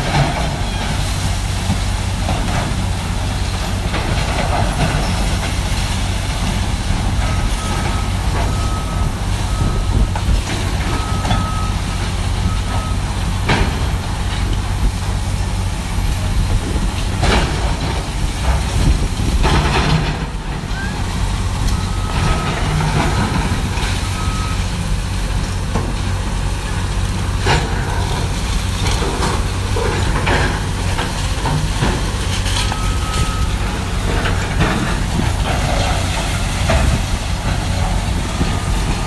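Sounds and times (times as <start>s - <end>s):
heavy diesel machinery running: 0.0s - 39.0s
back-up alarm beeping: 7.3s - 10.1s, 10.9s - 13.0s, 32.6s - 34.0s.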